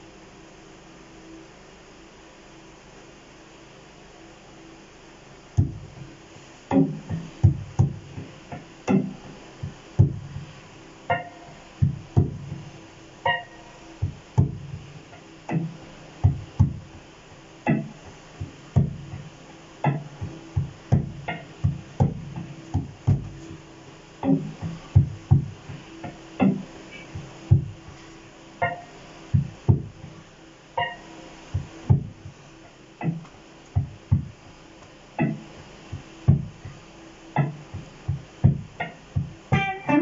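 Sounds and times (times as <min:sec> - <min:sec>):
faint amp hiss: 0:00.0 - 0:40.0
jazzy electric guitar: 0:37.4 - 0:40.0.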